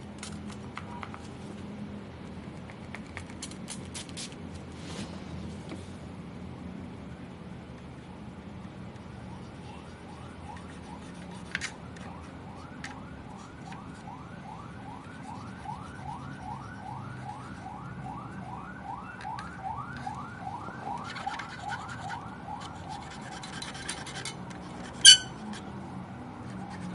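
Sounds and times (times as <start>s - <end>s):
rhythmic squeaky rubbing: 23.4s - 25.4s.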